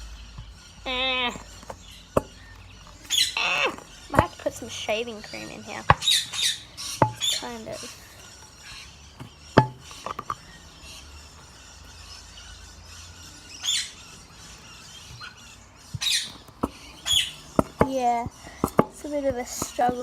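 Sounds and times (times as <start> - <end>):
bird squawking: 0.0 - 20.0
sharp knocks: 9.6 - 10.4.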